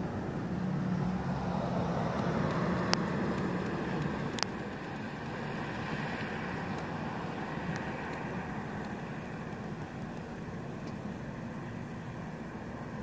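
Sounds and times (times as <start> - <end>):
vehicle engine humming: 0.0 - 13.0.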